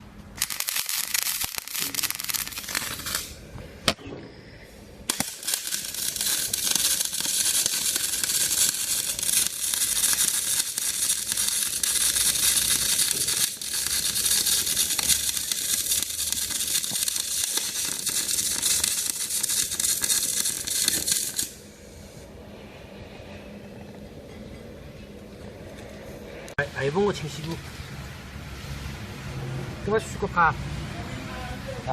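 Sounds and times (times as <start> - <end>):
electric arc welding crackling: 0.3 - 3.4, 5.1 - 21.7.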